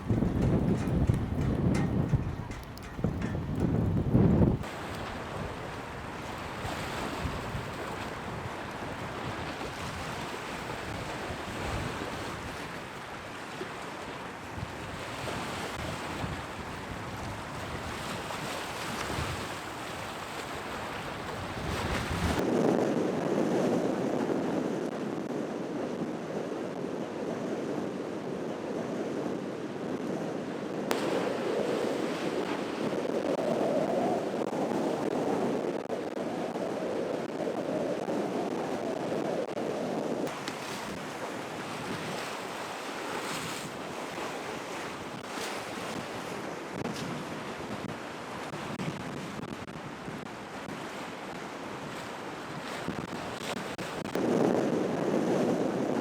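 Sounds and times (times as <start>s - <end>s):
wind buffeting microphone: 0.0s - 56.0s
waves crashing: 4.6s - 22.4s, 30.9s - 35.3s, 40.2s - 54.5s.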